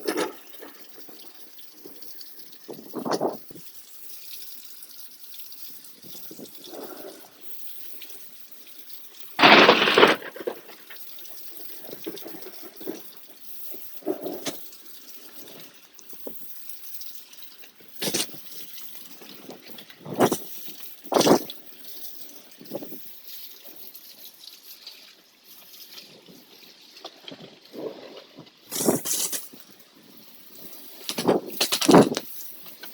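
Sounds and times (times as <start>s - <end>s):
steady rain: 0.0s - 32.9s
loud noisy bursts: 9.4s - 10.2s.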